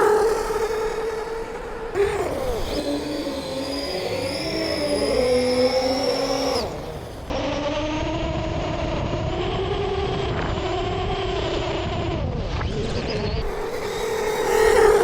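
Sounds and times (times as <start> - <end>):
toy car motor whine: 0.0 - 7.3, 13.4 - 15.0.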